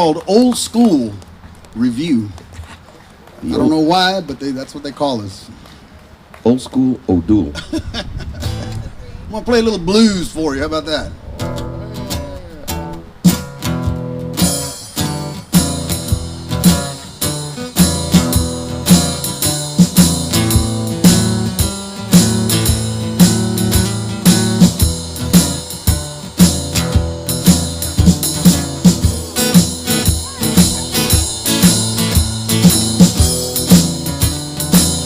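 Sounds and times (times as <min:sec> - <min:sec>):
guitar playing chords: 0:08.4 - 0:09.0, 0:11.1 - 0:35.0
hand drums beating: 0:11.6 - 0:35.0.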